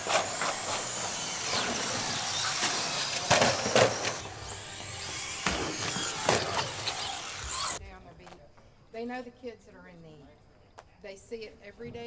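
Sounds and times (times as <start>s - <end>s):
radio-controlled car motors whining: 0.0s - 7.8s.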